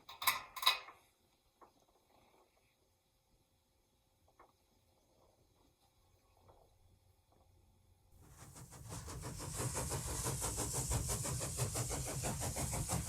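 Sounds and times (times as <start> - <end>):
machine running with high hiss: 8.2 - 13.0.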